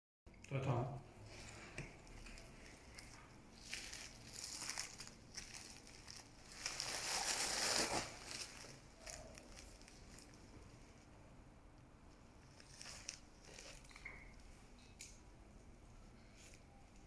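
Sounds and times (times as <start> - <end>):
packaging rustling and crinkling: 1.3 - 11.0, 12.4 - 14.6.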